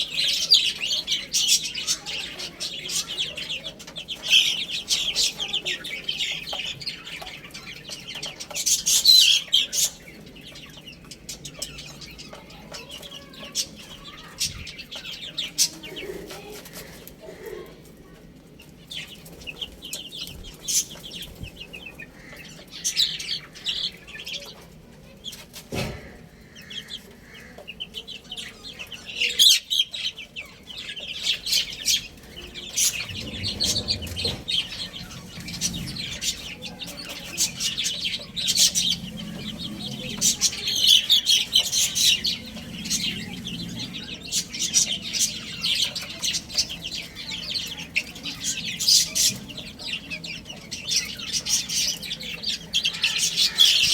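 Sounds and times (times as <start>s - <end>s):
baby chicks peeping: 0.0s - 53.9s
low clucking: 32.2s - 45.2s.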